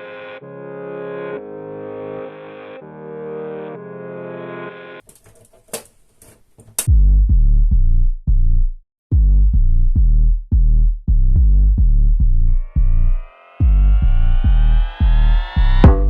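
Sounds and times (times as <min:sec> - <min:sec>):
heavy bass drum beat: 0:06.9 - 0:16.0
electronic music: 0:12.5 - 0:16.0
rising synth line: 0:12.5 - 0:16.0.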